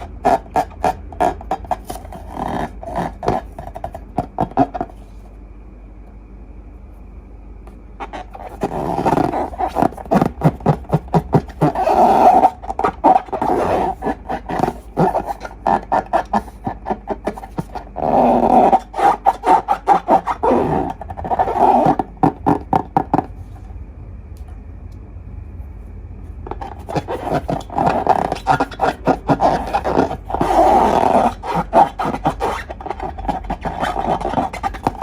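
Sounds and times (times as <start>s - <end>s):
slime squelching: 8.0s - 23.7s, 26.5s - 35.0s.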